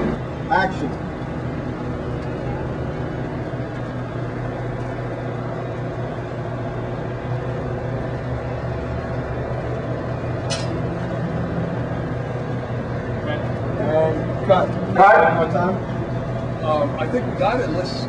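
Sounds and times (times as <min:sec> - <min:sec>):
low machine hum: 0:00.0 - 0:18.0
sharp click: 0:10.5 - 0:10.8.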